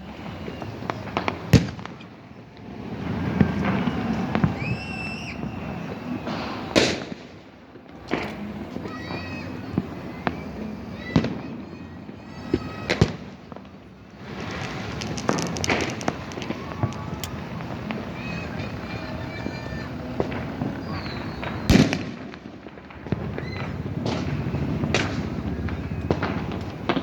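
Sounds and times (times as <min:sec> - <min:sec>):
dense firework crackling: 0:00.0 - 0:27.0
fireworks bangs and cracks: 0:00.0 - 0:27.0
whistling fireworks: 0:00.0 - 0:27.0.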